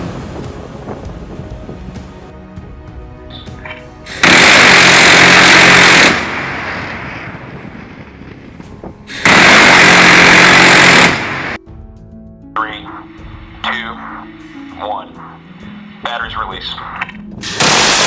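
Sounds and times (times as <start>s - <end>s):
rapid gunfire: 4.1s - 7.0s, 9.1s - 11.6s, 17.4s - 18.0s.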